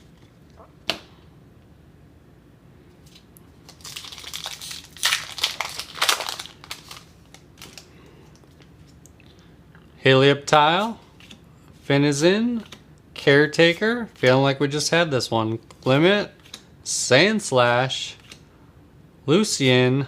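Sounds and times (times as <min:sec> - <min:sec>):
foil wrapper crinkling: 0:03.6 - 0:08.4.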